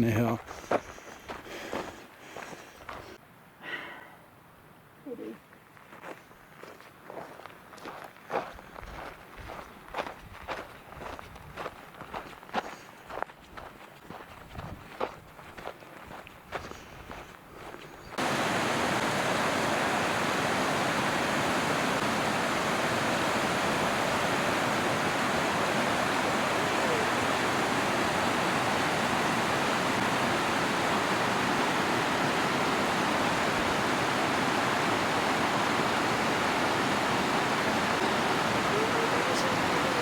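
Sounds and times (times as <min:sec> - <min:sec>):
waterfall roar: 0:18.2 - 0:40.0.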